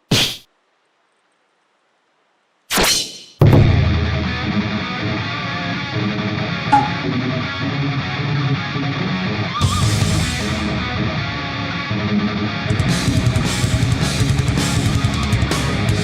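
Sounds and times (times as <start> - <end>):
rock music with guitar and drums: 3.5 - 16.0.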